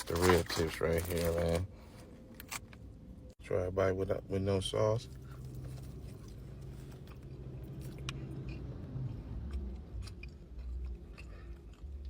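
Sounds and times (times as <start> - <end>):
low steady hum: 0.0 - 12.0
chewing food: 5.1 - 12.0.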